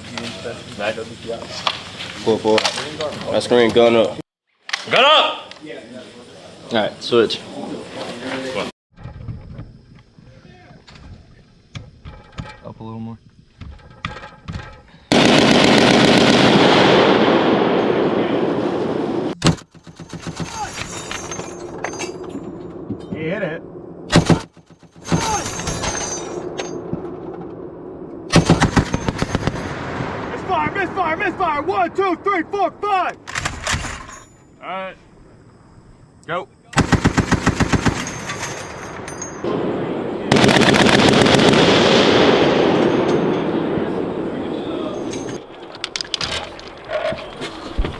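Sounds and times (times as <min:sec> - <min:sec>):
machine gun firing bursts: 0:15.1 - 0:17.0, 0:19.4 - 0:20.7, 0:28.3 - 0:29.8, 0:36.8 - 0:38.5, 0:40.3 - 0:42.0
machine gun automatic fire: 0:15.1 - 0:17.9, 0:19.3 - 0:21.5, 0:24.1 - 0:27.1, 0:28.3 - 0:30.0, 0:33.2 - 0:34.1, 0:36.8 - 0:39.6, 0:40.3 - 0:43.4
sharp crack: 0:22.1 - 0:34.0.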